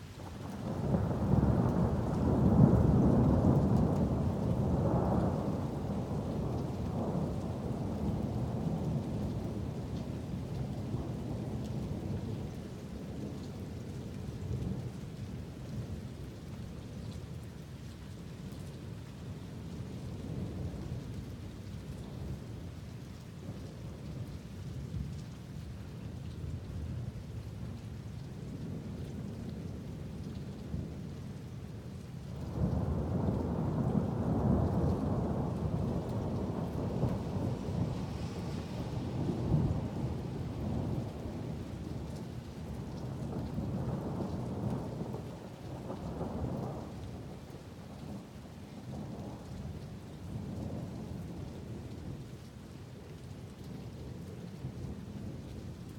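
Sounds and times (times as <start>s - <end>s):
steady rain falling: 0.0s - 55.9s
rolling thunder rumbling: 32.5s - 48.2s.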